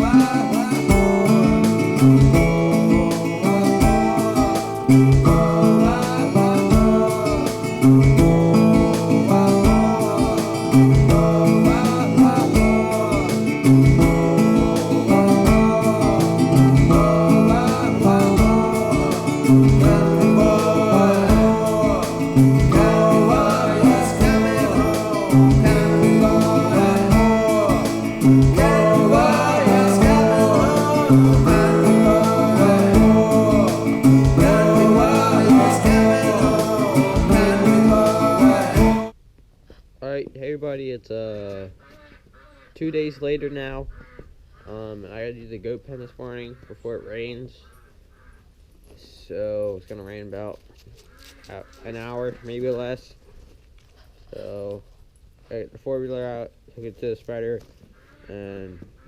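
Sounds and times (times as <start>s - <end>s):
country song with guitar and singing: 0.0s - 39.1s.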